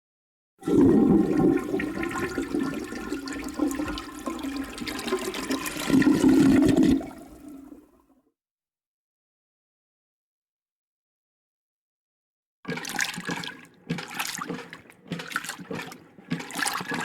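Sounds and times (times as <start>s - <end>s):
toilet flushing: 0.6s - 8.0s, 12.7s - 17.0s.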